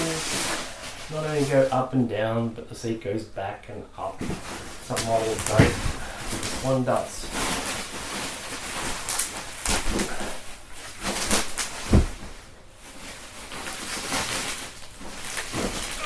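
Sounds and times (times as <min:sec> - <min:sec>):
packaging rustling and clattering: 0:04.1 - 0:16.0.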